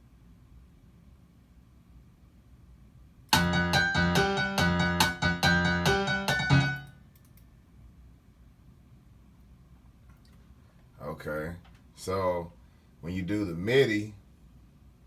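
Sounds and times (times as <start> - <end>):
keyboard-like synth notes: 3.4 - 6.9.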